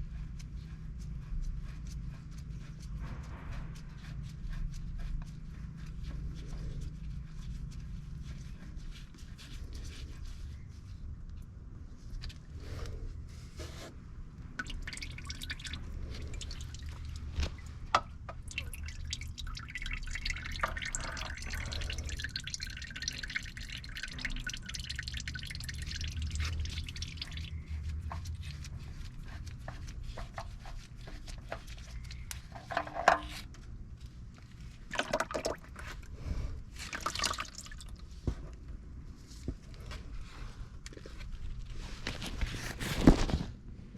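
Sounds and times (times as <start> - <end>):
oil trickling and dripping: 14.5 - 38.2.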